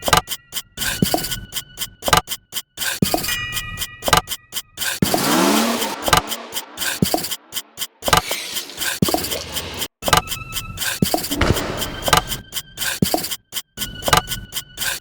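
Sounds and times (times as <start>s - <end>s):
choppy cut sound collage: 4.8s - 9.9s, 11.0s - 13.6s
vehicle-like swell: 4.9s - 9.9s.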